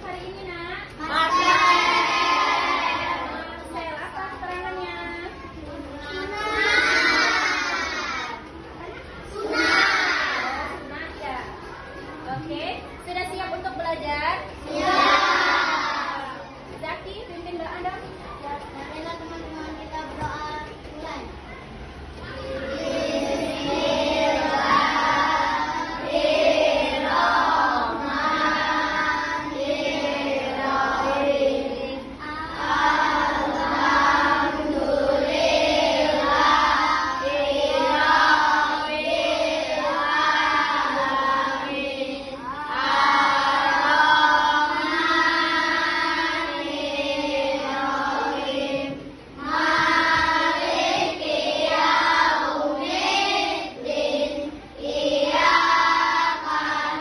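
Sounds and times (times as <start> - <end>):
children singing in unison: 1.0 - 3.7, 6.0 - 8.5, 9.3 - 10.7, 14.5 - 16.4, 22.4 - 57.0.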